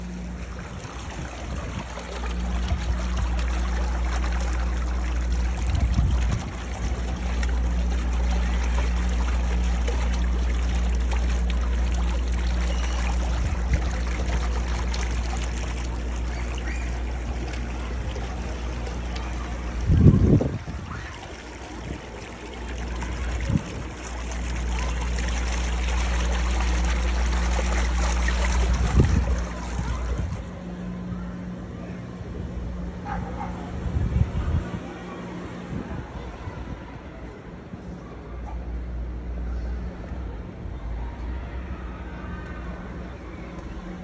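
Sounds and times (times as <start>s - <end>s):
water running: 0.0s - 30.5s
low rumble and hum: 0.0s - 44.0s.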